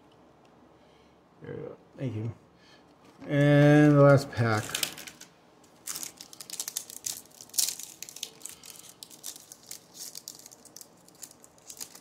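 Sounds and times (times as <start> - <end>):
card pack wrapper tearing and crinkling: 3.2 - 12.0.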